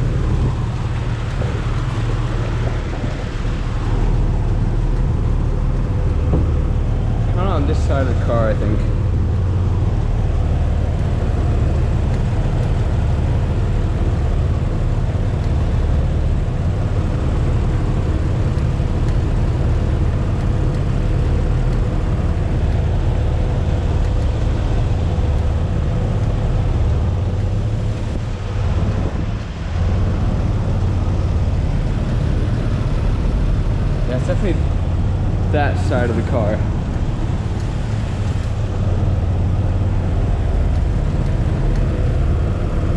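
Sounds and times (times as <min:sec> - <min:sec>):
car engine idling: 0:00.0 - 0:42.9
clicking noise from engine: 0:09.8 - 0:28.3, 0:36.0 - 0:42.9.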